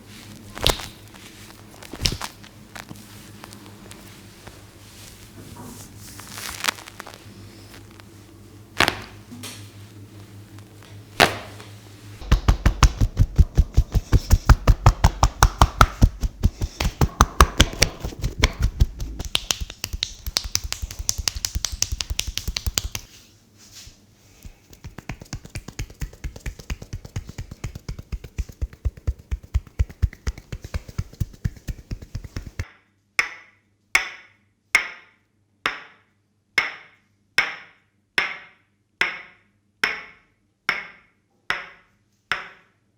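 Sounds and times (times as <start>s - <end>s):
hands tapping on body: 12.2s - 23.1s, 24.4s - 32.6s
sharp hand slaps: 12.2s - 23.1s, 24.5s - 32.6s.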